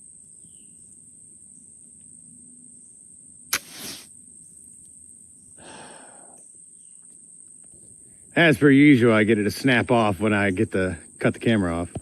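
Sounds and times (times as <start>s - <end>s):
crickets trilling: 0.0s - 12.0s
pistol shot crack and hiss: 3.5s - 4.1s.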